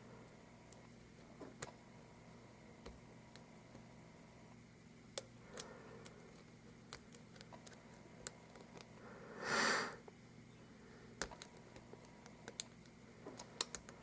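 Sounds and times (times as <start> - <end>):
breath through the nose: 9.0 - 10.0.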